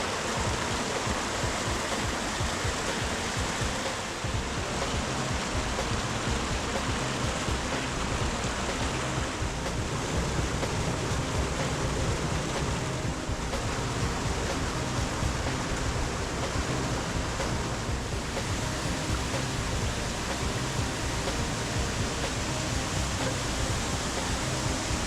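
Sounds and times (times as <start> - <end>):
creek water rushing: 0.0 - 25.0.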